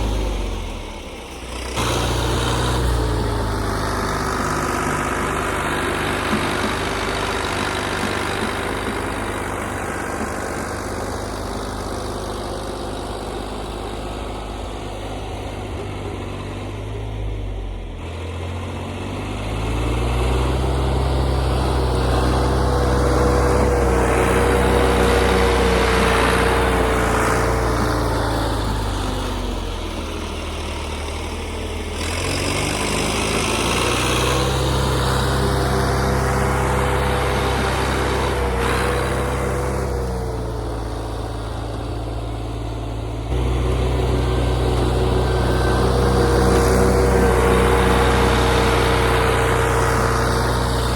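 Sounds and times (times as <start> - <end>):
steady whine: 0.0 - 18.0
diesel engine revving under load: 0.0 - 50.9.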